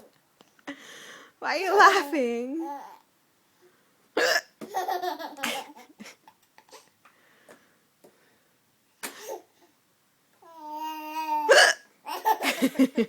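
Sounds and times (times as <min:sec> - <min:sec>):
woman hiccuping: 0:04.2 - 0:04.5, 0:11.5 - 0:11.8
baby laughing: 0:04.6 - 0:06.9, 0:12.1 - 0:12.9.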